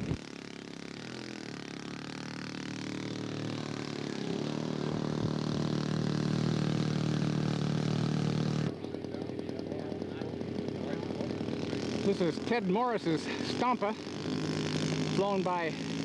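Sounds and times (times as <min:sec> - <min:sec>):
model airplane engine running: 0:00.0 - 0:16.0.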